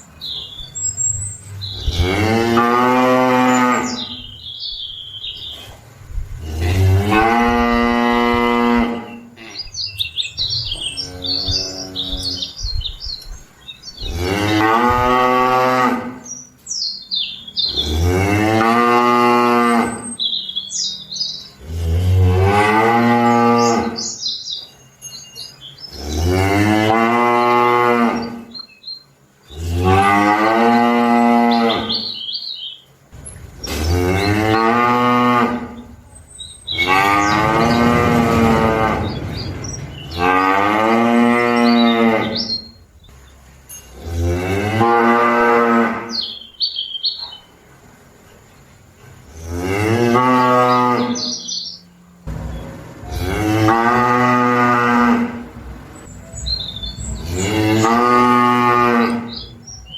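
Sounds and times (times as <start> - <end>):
small birds chirping: 0.0 - 6.8, 8.9 - 15.2, 16.2 - 18.3, 19.9 - 21.8, 23.3 - 26.3, 31.4 - 44.0, 46.1 - 49.4, 50.4 - 53.5, 55.5 - 59.9
cattle mooing: 1.6 - 4.2, 6.4 - 9.7, 10.6 - 12.5, 21.6 - 24.0, 33.8 - 36.0, 36.6 - 42.8, 53.1 - 59.6.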